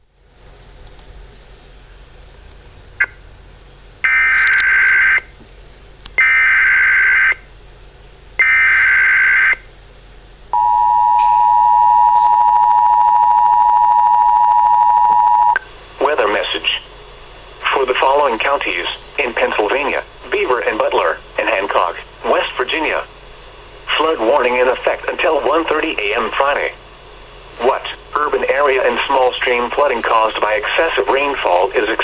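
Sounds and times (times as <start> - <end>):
two-tone attention signal: 10.6 - 15.6
faint radio hiss: 16.0 - 32.0.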